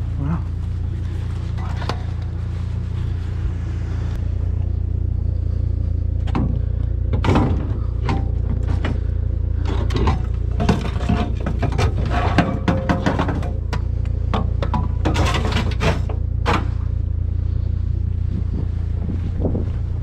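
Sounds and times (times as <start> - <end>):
vehicle engine droning: 0.0 - 20.0
sharp knocks and rattles: 6.2 - 17.1.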